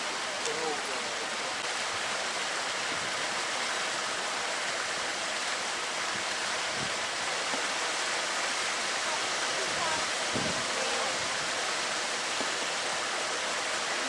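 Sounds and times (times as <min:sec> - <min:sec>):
steady water hiss: 0:00.0 - 0:14.0.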